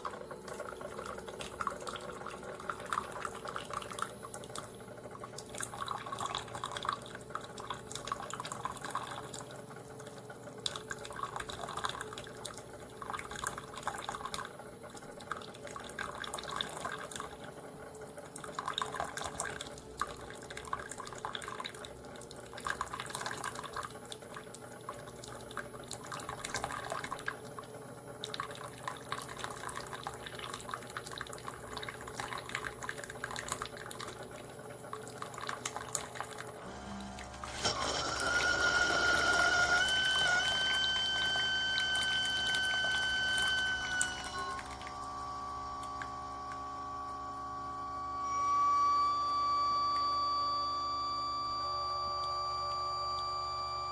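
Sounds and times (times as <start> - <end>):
water trickling and dripping: 0.0 - 36.6
coffee maker gurgling: 0.0 - 48.7
faint steady hum: 0.0 - 53.9.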